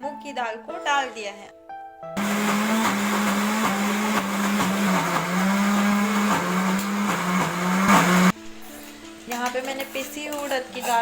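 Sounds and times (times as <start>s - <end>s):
mixer grinder motor hum: 2.2s - 8.3s.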